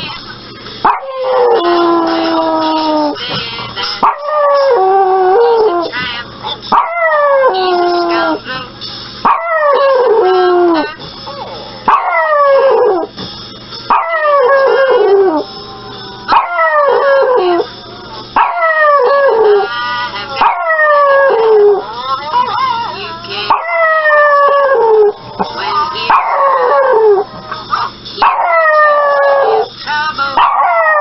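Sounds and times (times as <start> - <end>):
puppy howling: 0.8 - 3.2, 4.0 - 6.0, 6.7 - 8.4, 9.3 - 10.9, 11.9 - 13.1, 13.9 - 15.5, 16.3 - 17.7, 18.4 - 19.7, 20.4 - 21.9, 23.5 - 27.3, 28.2 - 29.7, 30.4 - 31.0.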